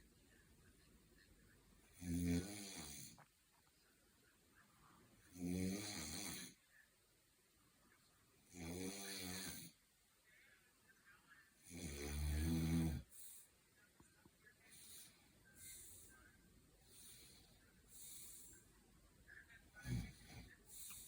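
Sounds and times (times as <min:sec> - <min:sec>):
person snoring: 0:02.0 - 0:03.2, 0:05.3 - 0:06.6, 0:08.5 - 0:09.8, 0:11.7 - 0:13.2, 0:19.8 - 0:21.0.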